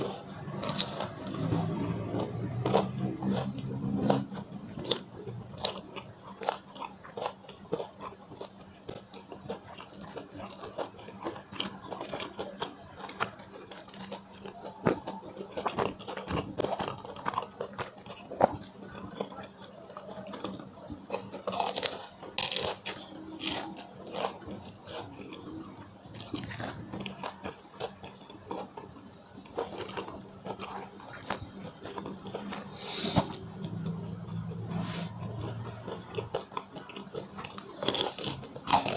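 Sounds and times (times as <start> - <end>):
chewing and mouth smacks: 0.0 - 38.9.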